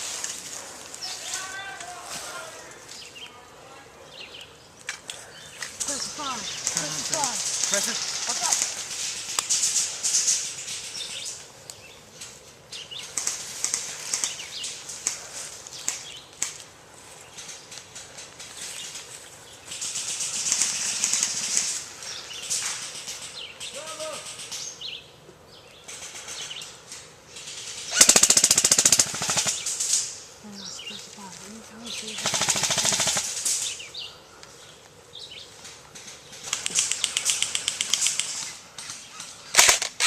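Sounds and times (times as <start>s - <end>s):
rustling and swishing: 0.0s - 3.1s, 5.6s - 11.5s
airsoft gun full-auto burst: 27.9s - 29.9s, 32.1s - 33.5s, 39.5s - 40.0s
distant airsoft shots: 27.9s - 30.0s, 32.1s - 33.6s
bird chirps: 30.4s - 32.6s
sharp clicks: 35.6s - 40.0s.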